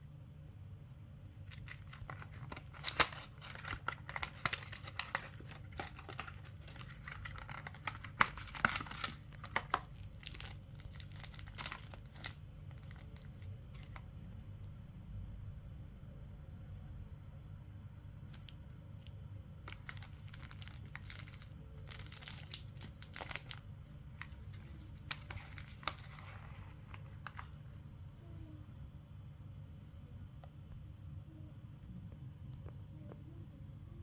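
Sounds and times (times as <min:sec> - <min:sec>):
packaging being torn and crinkled: 0:01.5 - 0:14.0, 0:18.3 - 0:18.6, 0:19.7 - 0:23.6, 0:24.2 - 0:27.5.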